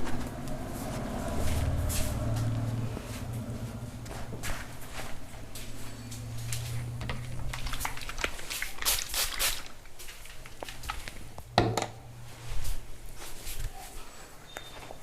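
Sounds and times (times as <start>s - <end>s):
hands rubbing skin and hair: 12.2s - 15.0s.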